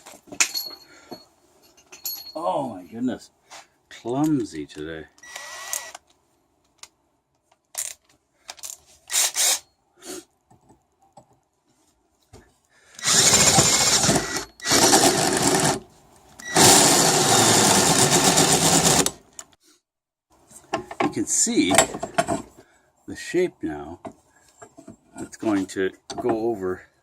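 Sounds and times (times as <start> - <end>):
drill hole saw grinding metal: 13.0 - 15.8, 16.4 - 19.2.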